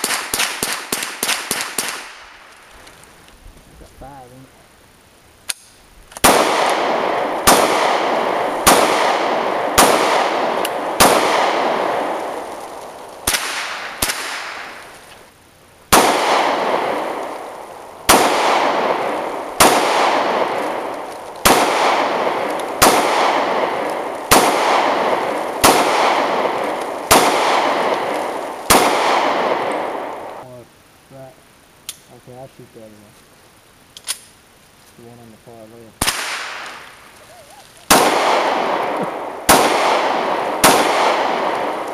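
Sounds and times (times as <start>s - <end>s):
gunshots with long echo: 0.0s - 2.5s, 6.2s - 15.1s, 15.9s - 30.4s, 36.0s - 37.1s, 37.9s - 41.9s.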